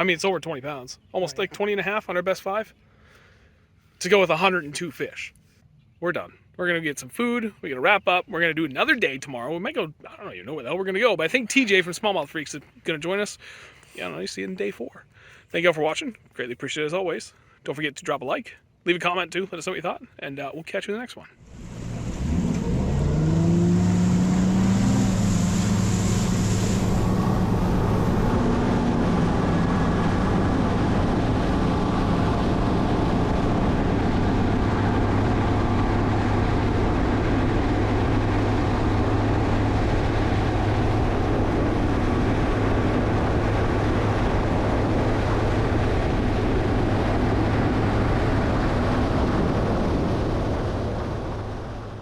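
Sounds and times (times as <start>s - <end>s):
wind: 0.0s - 52.0s
water noise: 21.4s - 52.0s
outboard motor running: 29.4s - 49.8s.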